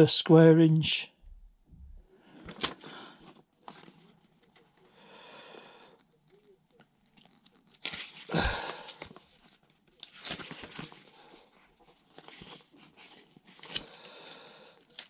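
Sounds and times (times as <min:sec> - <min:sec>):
paper rustling: 0:02.4 - 0:05.0, 0:05.9 - 0:14.0.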